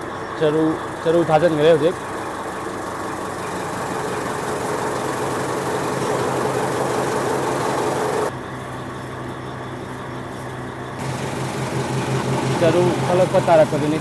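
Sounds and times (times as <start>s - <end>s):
chaff cutter humming: 1.7s - 8.3s, 11.0s - 14.0s.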